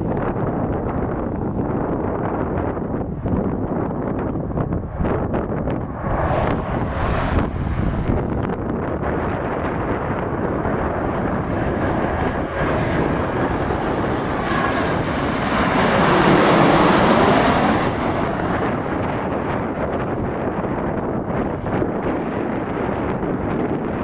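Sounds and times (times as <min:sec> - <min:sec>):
military aircraft passing: 0:00.0 - 0:24.0.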